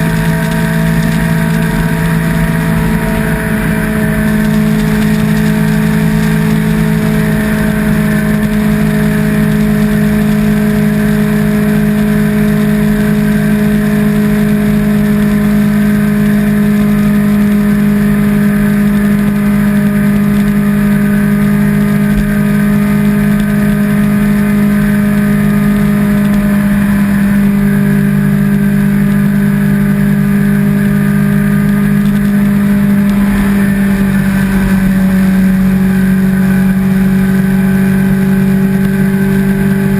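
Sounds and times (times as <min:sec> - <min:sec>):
motorcycle engine cruising: 0:00.0 - 0:39.9
steady rush of noise: 0:00.0 - 0:39.9.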